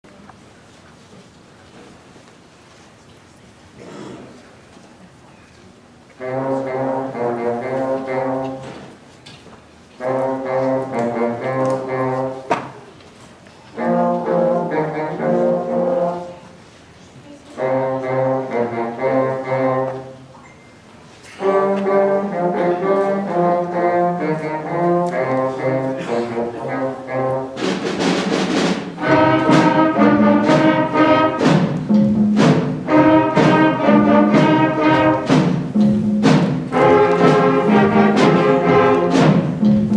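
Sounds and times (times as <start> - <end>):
instrumental ensemble playing blues: 6.2 - 8.9, 10.0 - 12.7, 13.7 - 16.6, 17.5 - 20.2, 21.4 - 39.9
sharp percussive hits: 27.6 - 39.9.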